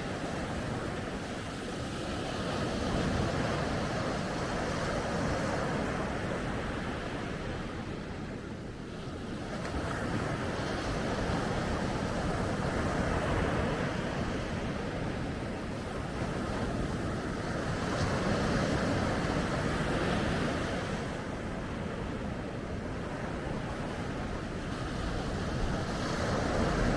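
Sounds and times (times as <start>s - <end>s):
ocean waves breaking on beach: 0.0s - 26.9s
wind noise on microphone: 9.4s - 26.9s.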